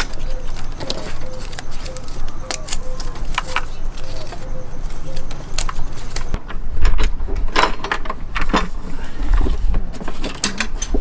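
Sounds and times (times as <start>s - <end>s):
dull low thumps: 6.3s - 7.5s.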